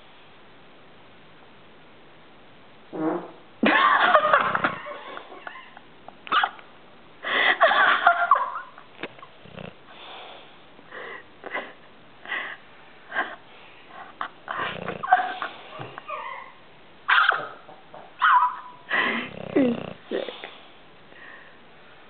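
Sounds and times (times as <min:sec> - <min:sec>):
pet snoring: 0:09.2 - 0:10.4, 0:14.5 - 0:16.0, 0:19.1 - 0:20.6.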